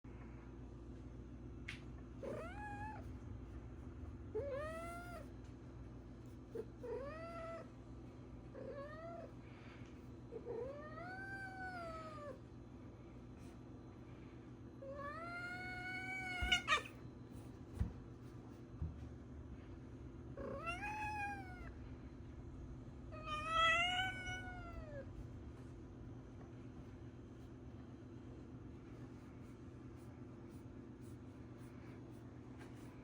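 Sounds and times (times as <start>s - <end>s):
cat meowing: 15.0s - 16.9s, 20.4s - 21.7s, 23.1s - 25.0s.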